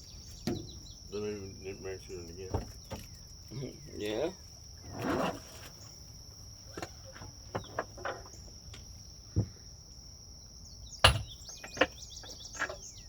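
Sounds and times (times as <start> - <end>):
insect chirring: 0.0 - 13.0
knocks: 11.0 - 12.0.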